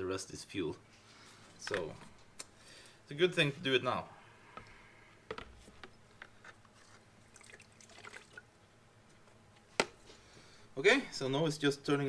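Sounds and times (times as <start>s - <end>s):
liquid dripping and trickling: 7.3s - 8.5s.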